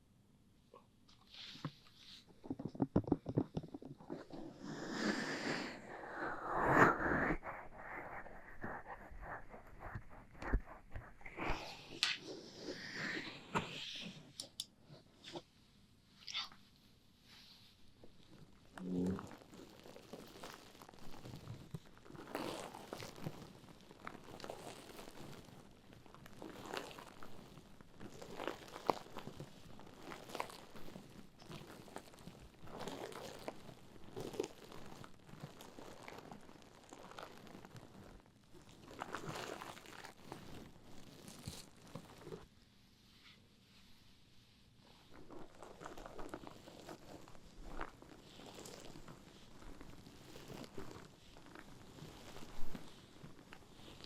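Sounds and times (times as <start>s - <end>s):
rustling scratching noise: 1.1s - 14.4s, 16.5s - 54.0s
mesh bath pouf crinkling: 17.3s - 54.0s.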